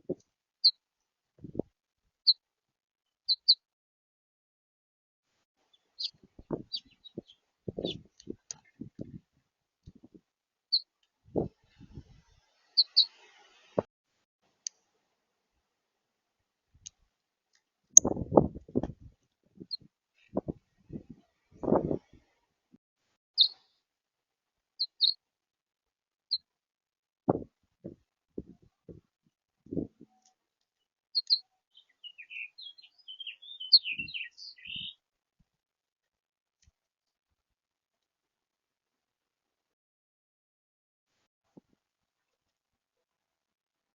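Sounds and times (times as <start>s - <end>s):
high bird chirps: 3.3s - 3.6s, 5.7s - 8.1s, 12.8s - 13.3s, 23.4s - 23.6s, 24.8s - 25.2s, 31.2s - 35.0s
songbird warbling: 12.8s - 13.2s, 31.2s - 34.9s.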